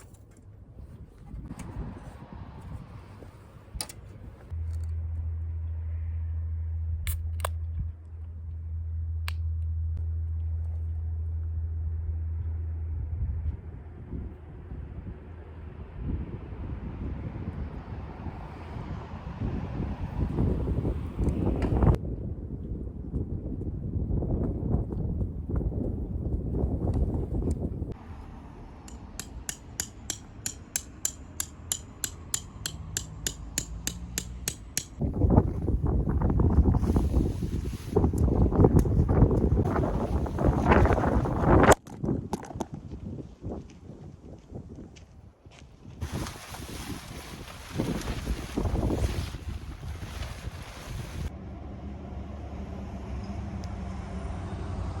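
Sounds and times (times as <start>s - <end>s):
steady low hum: 4.4s - 16.2s.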